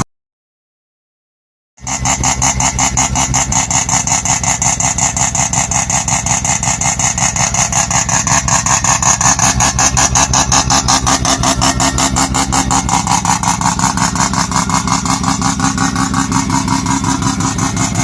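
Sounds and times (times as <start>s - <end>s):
rotary engine idling: 1.8s - 18.0s.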